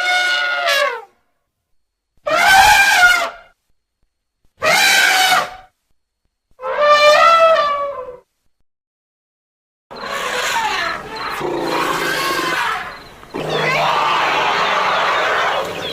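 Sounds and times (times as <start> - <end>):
elephant-like trumpet calls: 0.0 - 1.2, 2.2 - 3.6, 4.6 - 5.7, 6.6 - 8.2, 9.9 - 15.9.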